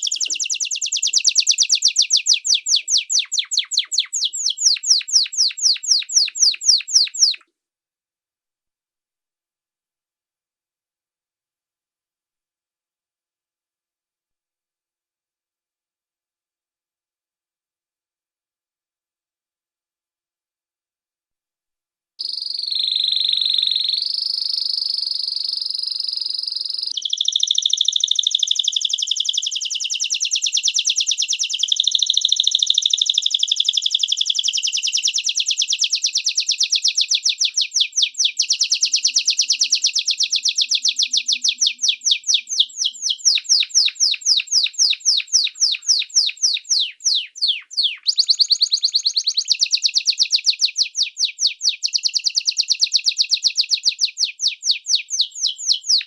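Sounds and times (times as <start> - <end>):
canary singing trills: 0.0 - 7.4, 22.2 - 56.0.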